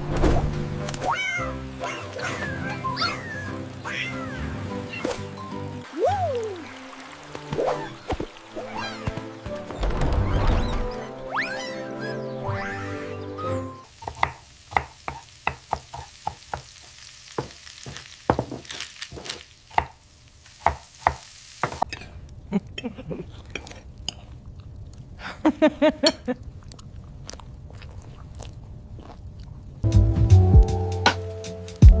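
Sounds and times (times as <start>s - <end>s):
squeaky chirps: 9.8s - 13.8s.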